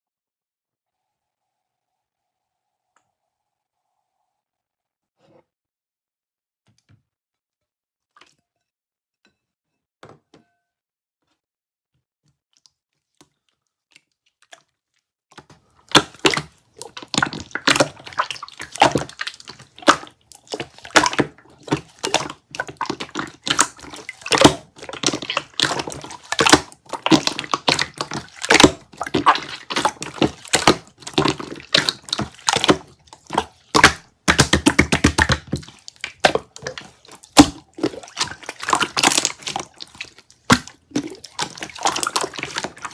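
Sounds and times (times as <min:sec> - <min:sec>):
slime squeezed by hand: 0:15.8 - 0:42.9.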